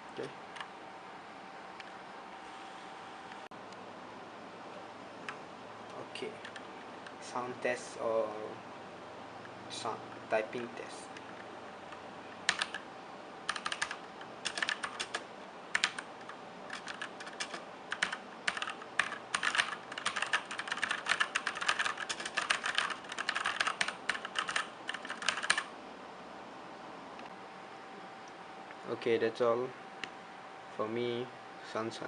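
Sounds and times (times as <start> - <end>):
typing on mechanical keyboard: 6.4 - 6.6, 12.5 - 12.8, 13.5 - 25.7.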